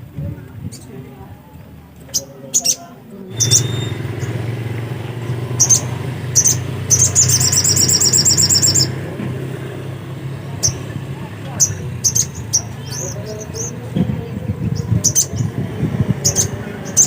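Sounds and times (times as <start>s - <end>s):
bird chirping and trilling: 2.1s - 9.0s, 10.5s - 13.9s, 14.6s - 17.0s
vehicle motor rumble: 3.3s - 17.0s.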